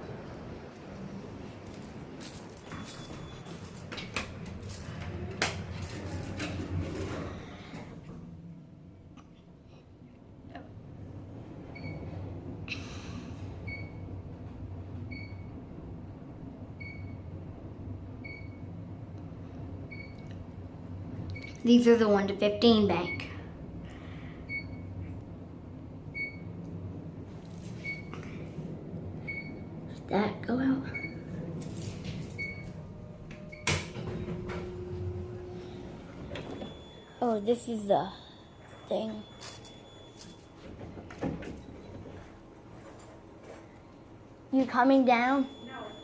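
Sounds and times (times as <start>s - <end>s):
steady low hum: 0.0s - 46.0s
elevator click: 30.9s - 37.1s.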